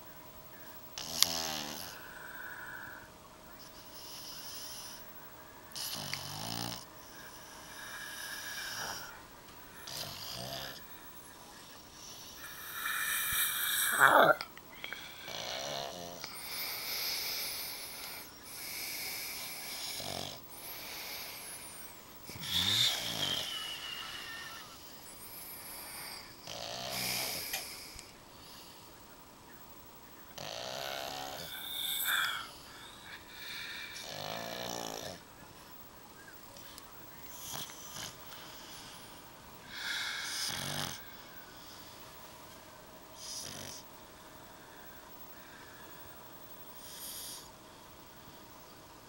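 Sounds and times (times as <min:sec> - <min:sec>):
dog and man snoring: 0:01.0 - 0:02.1, 0:05.7 - 0:09.2, 0:09.8 - 0:10.9, 0:12.0 - 0:28.0, 0:30.3 - 0:32.6, 0:33.3 - 0:35.2, 0:37.3 - 0:39.1, 0:39.7 - 0:41.1, 0:43.2 - 0:43.9, 0:46.8 - 0:47.5.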